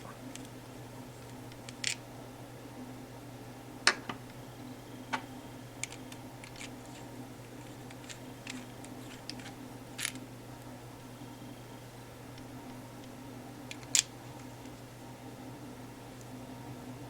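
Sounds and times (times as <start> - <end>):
steady low hum: 0.0 - 17.0
clicks and taps of small parts: 5.1 - 10.2, 12.4 - 14.8.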